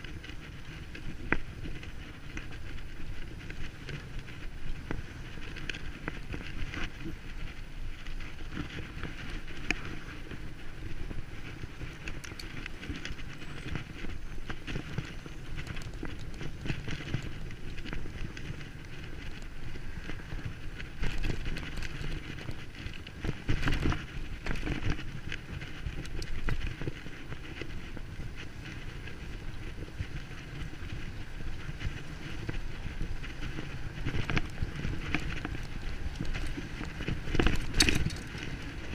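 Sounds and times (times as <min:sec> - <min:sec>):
bicycle rattling over rough ground: 0:00.0 - 0:38.9
bicycle knocks and jolts: 0:31.6 - 0:38.9.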